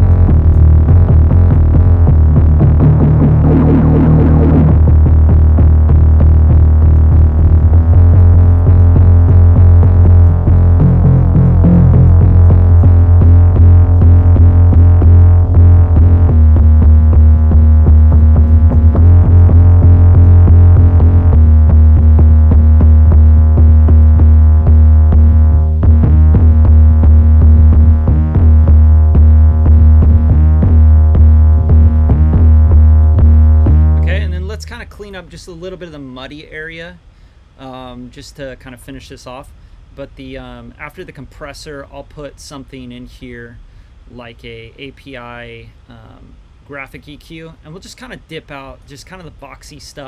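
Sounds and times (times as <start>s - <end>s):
drum machine drums: 0.0s - 35.2s
distorted bass: 0.0s - 36.8s.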